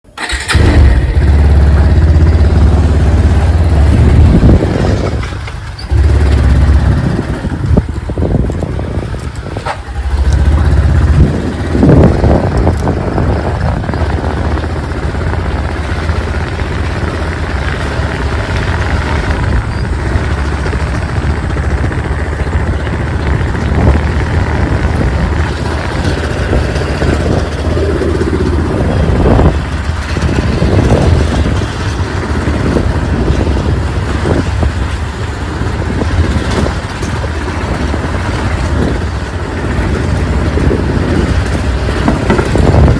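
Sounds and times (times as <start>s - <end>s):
motorcycle engine rumbling: 0.0s - 42.9s.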